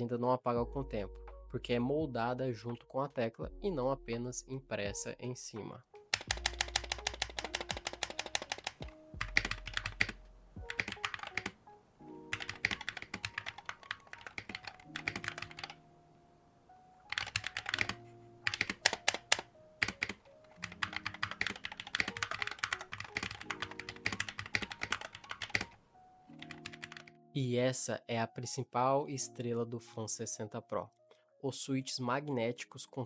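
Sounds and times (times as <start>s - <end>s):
keyboard keystroke clicks: 6.2s - 11.6s, 12.3s - 15.8s, 17.1s - 25.8s, 26.4s - 27.1s.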